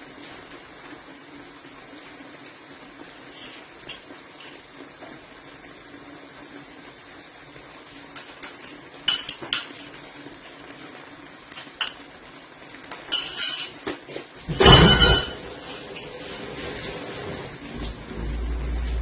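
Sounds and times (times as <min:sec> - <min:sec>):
metal utensils clinking on cookware: 0:08.4 - 0:09.9, 0:12.9 - 0:13.8, 0:14.6 - 0:16.5.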